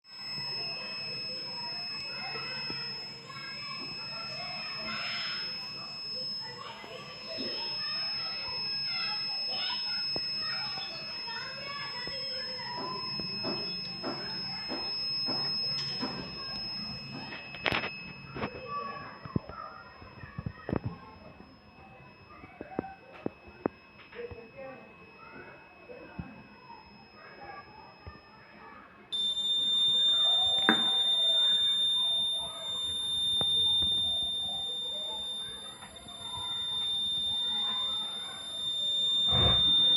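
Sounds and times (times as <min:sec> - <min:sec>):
high-pitched buzzer alarm tone: 0:00.0 - 0:39.9
faint voices: 0:00.1 - 0:39.9.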